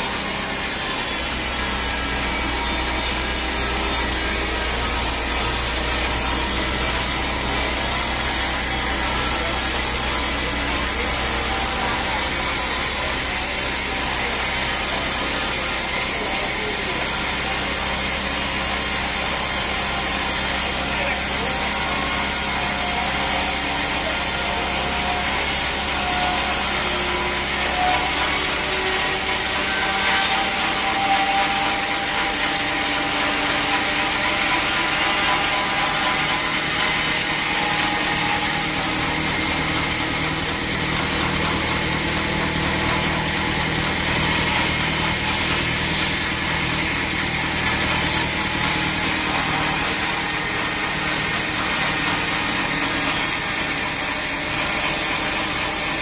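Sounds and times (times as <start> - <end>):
saw blade rasping through wood: 0.0 - 56.0.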